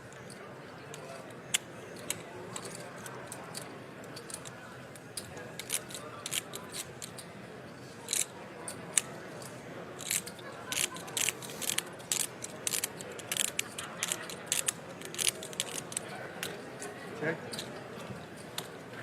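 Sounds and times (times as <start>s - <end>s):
poker chips clicking: 5.6s - 7.2s, 8.1s - 9.1s, 10.0s - 16.5s.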